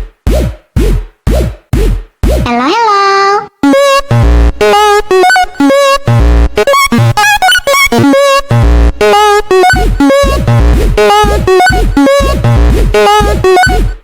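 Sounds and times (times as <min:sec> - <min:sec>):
choppy wavering synth notes: 0:03.6 - 0:14.0.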